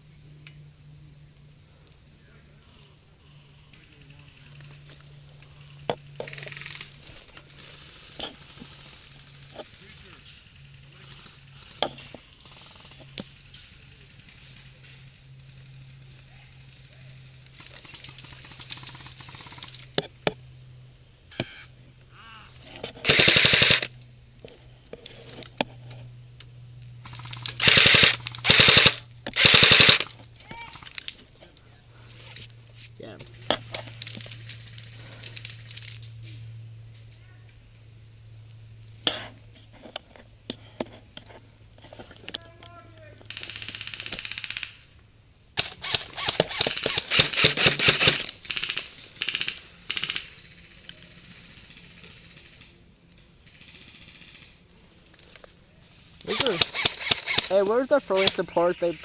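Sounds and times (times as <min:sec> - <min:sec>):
faint low hum: 0:00.0 - 0:59.0
airsoft gun firing bursts: 0:23.0 - 0:23.9, 0:27.0 - 0:30.1, 0:43.3 - 0:44.8, 0:45.6 - 0:50.8, 0:56.3 - 0:58.4.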